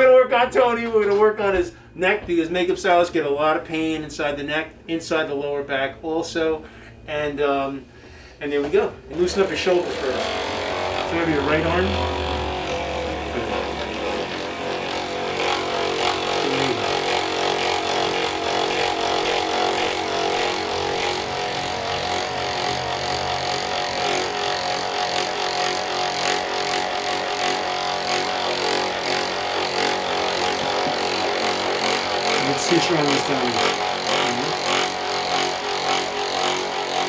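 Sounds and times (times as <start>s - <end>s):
electric massager motor running: 9.1s - 37.0s.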